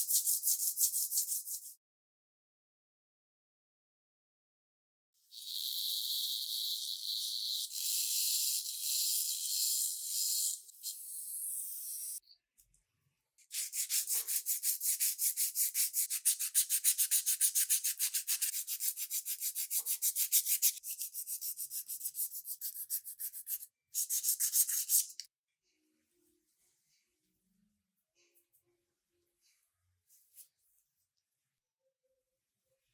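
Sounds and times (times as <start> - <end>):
sandpaper rubbing strokes: 13.5 - 25.2.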